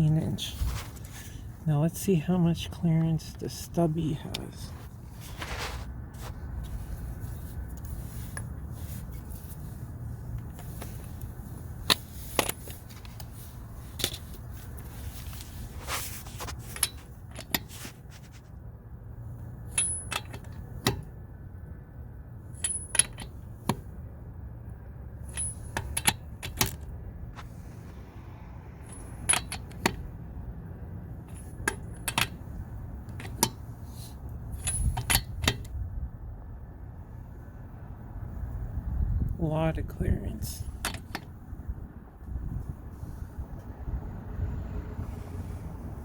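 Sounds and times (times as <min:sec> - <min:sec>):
low steady hum: 0:00.0 - 0:46.0
metal clinks and knocks: 0:10.3 - 0:15.7, 0:19.6 - 0:21.1, 0:22.4 - 0:23.9, 0:25.1 - 0:26.9, 0:28.8 - 0:30.1, 0:31.2 - 0:35.8, 0:40.7 - 0:41.4.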